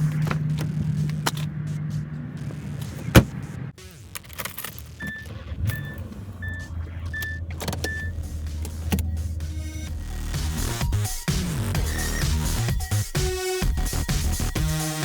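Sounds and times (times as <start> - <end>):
car door shutting: 0.0 - 3.4, 5.0 - 9.4
low car hum: 0.0 - 14.6
car warning chime beeps: 4.9 - 11.2.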